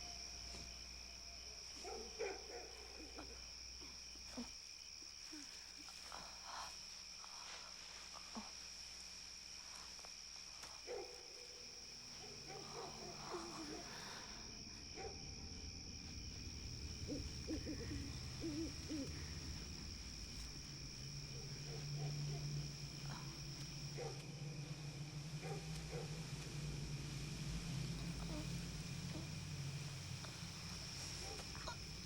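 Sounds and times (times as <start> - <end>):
crickets droning: 0.0 - 32.0
low hum: 15.1 - 32.0
wavering low calls: 16.4 - 32.0
owl hoots: 16.9 - 19.6.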